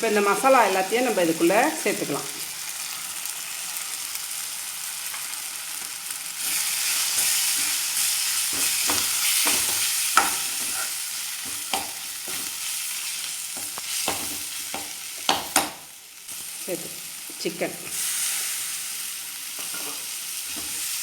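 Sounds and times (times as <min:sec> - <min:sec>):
masala sizzling in oil: 0:00.0 - 0:21.0
spoon clinking and scraping pan: 0:06.5 - 0:12.7, 0:19.6 - 0:21.0.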